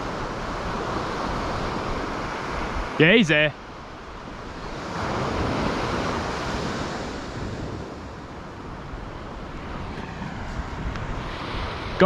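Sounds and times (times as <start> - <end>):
wind on microphone: 4.0 - 12.0
surf breaking on beach: 4.2 - 12.0.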